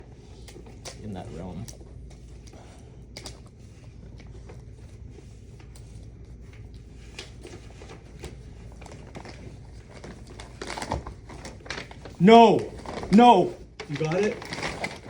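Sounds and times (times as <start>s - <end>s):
packaging rustling and clicking: 7.1s - 15.0s.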